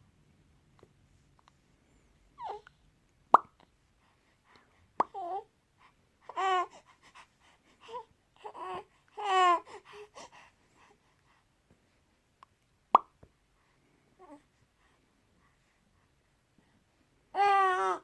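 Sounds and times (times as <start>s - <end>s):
infant cooing: 2.4s - 2.8s, 7.8s - 9.8s, 17.4s - 18.0s.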